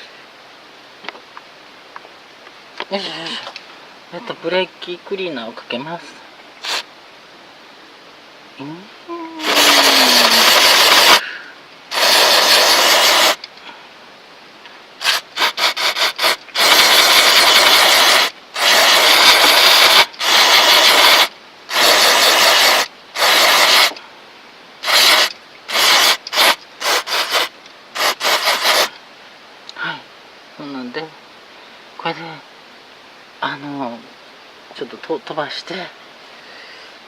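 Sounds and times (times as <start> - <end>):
aerosol can spraying: 6.6 - 6.9, 9.4 - 11.2, 11.9 - 13.5, 15.0 - 24.0, 24.8 - 29.0.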